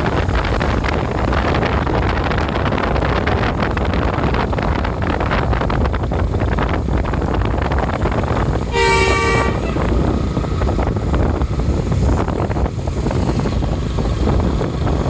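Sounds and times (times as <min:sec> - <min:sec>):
road rumble: 0:00.0 - 0:15.0
wind on microphone: 0:00.0 - 0:15.0
bus air horn blast: 0:08.7 - 0:10.1.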